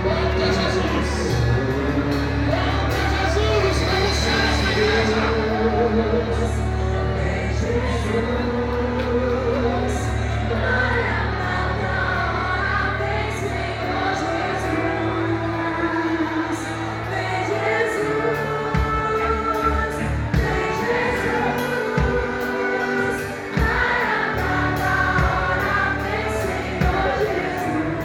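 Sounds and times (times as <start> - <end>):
bass: 0.0 - 28.0
group singing worship song: 0.0 - 28.0
steady drum beat: 18.6 - 28.0.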